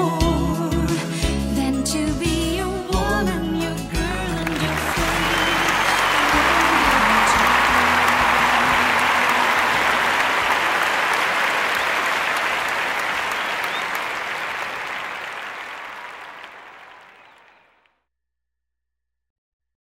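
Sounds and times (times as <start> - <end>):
audience applauding: 4.3 - 17.8.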